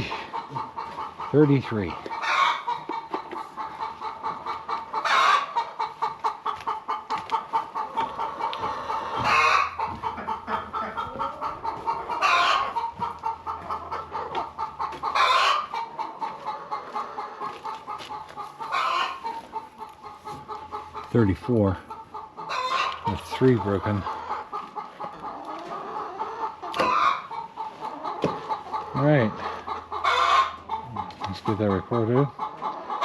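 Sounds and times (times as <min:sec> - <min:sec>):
hens clucking: 0:00.0 - 0:33.0
loud hen call: 0:02.1 - 0:20.9, 0:22.4 - 0:23.0, 0:25.3 - 0:31.3.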